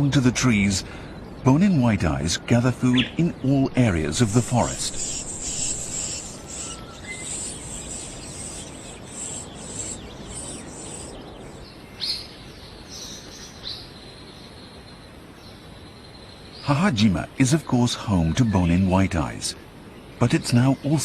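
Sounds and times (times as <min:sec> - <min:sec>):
steady hiss: 0:00.0 - 0:21.0
pulsing insect buzz: 0:04.1 - 0:11.6.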